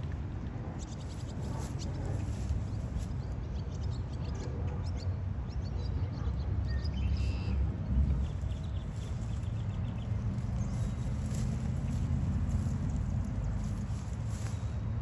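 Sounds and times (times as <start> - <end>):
steady low rumble: 0.0 - 5.6, 6.4 - 15.0
small birds chirping: 0.8 - 15.0.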